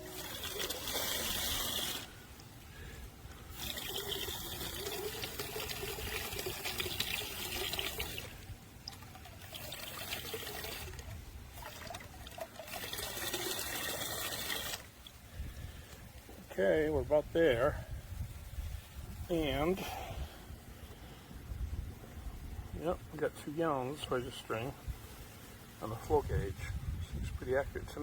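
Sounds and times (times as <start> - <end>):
hose water running into bucket: 0.0 - 2.5, 3.4 - 15.2.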